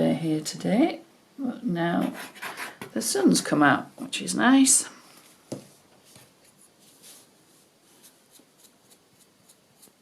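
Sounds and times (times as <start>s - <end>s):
brush strokes spreading glue: 6.4s - 10.0s.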